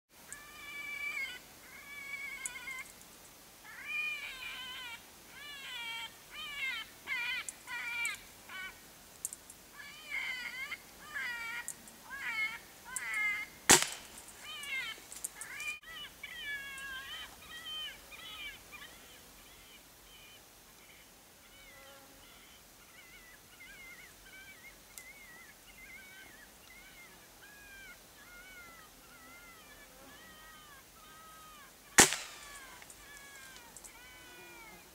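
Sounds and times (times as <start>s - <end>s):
air rifle shot: 13.7s - 14.2s, 32.0s - 32.7s.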